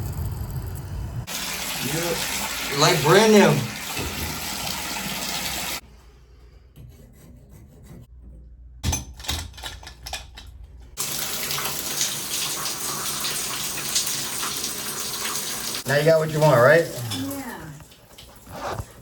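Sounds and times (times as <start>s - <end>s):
shower water spraying: 0.0s - 5.8s, 11.0s - 19.0s.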